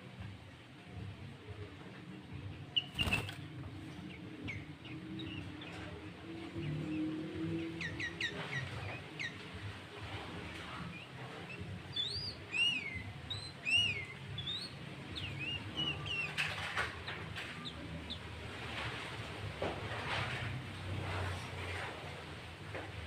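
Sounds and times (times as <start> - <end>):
bird singing chirps and whistles: 2.8 - 3.3, 6.9 - 9.4, 10.9 - 16.6.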